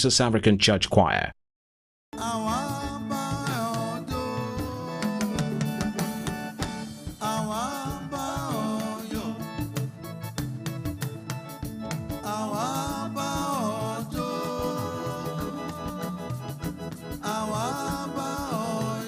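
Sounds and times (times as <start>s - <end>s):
choir singing gospel: 2.2s - 10.0s, 12.2s - 19.0s
drums and instrumental accompaniment: 2.2s - 19.0s.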